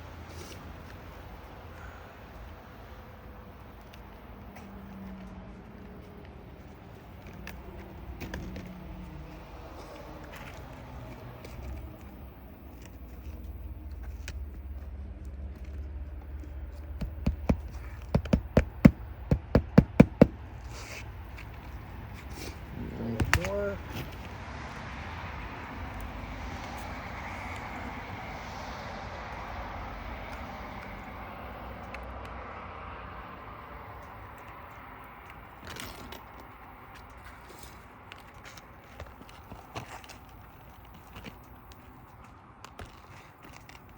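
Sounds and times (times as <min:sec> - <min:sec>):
hammer driving nails: 0:17.0 - 0:20.4.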